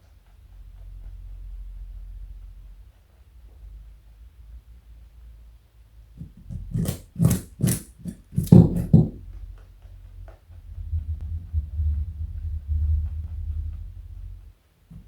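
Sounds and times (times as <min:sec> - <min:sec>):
rabbit crunching a carrot: 0:06.2 - 0:08.9.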